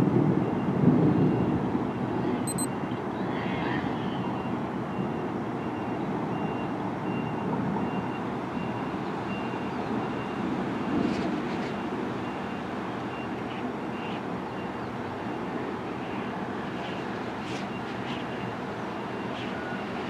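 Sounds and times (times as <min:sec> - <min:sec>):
reversing alarm beep: 0:02.5 - 0:02.8.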